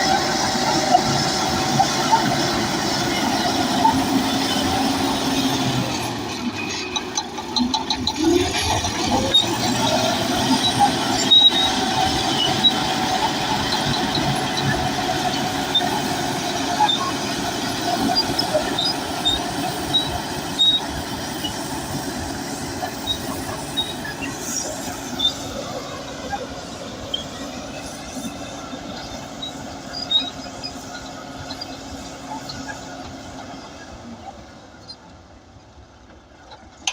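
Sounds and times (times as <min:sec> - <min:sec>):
diesel engine running: 0:00.0 - 0:36.9
short high squeaks: 0:05.4 - 0:22.2, 0:22.9 - 0:25.7, 0:26.3 - 0:33.9.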